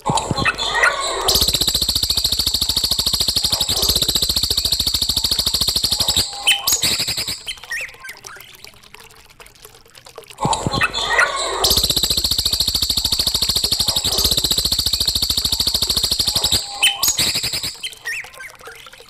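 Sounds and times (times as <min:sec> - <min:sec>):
fast buzzing bird trill: 0:00.3 - 0:07.8, 0:11.0 - 0:18.1
short bird chirps: 0:00.4 - 0:07.9, 0:11.1 - 0:18.2.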